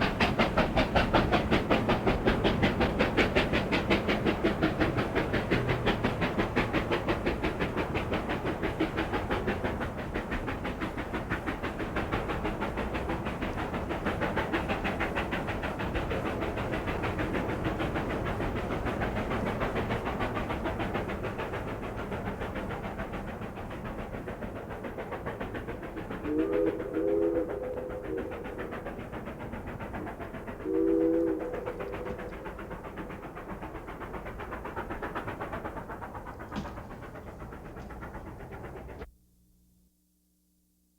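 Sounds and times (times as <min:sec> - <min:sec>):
steam locomotive rhythmic beat: 0:00.0 - 0:39.1
train chord whistle blasts: 0:26.2 - 0:28.7, 0:30.6 - 0:32.2.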